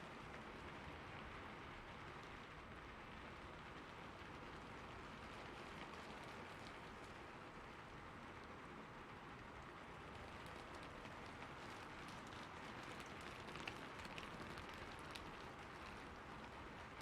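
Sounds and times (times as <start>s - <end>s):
rain on a rooftop: 0.0s - 17.0s
raindrops ticking: 10.4s - 16.0s.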